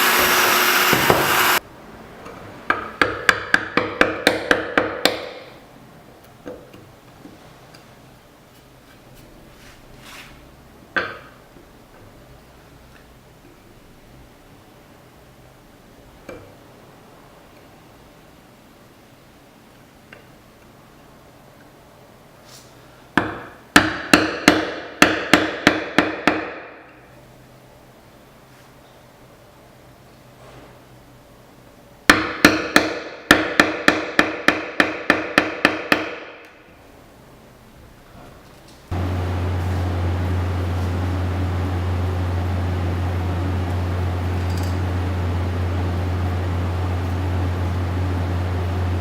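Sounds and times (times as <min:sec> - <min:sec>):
hammer striking wood: 0:00.1 - 0:01.6, 0:02.7 - 0:05.6, 0:23.2 - 0:26.8, 0:32.1 - 0:36.4.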